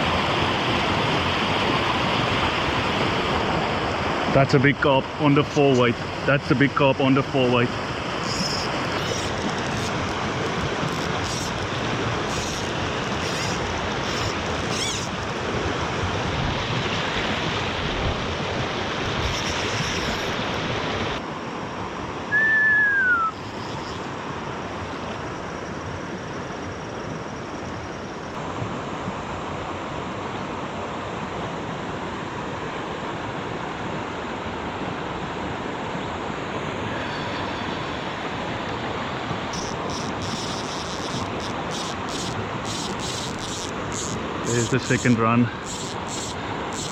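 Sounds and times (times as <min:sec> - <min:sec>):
rushing water: 0:00.0 - 0:25.4, 0:28.4 - 0:46.9
wind: 0:00.0 - 0:46.9
whistle falling in pitch: 0:22.3 - 0:23.4.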